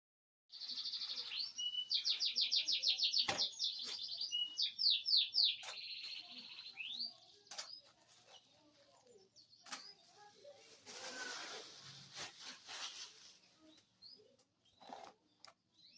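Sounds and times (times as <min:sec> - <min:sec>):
canary singing: 0:00.5 - 0:10.1.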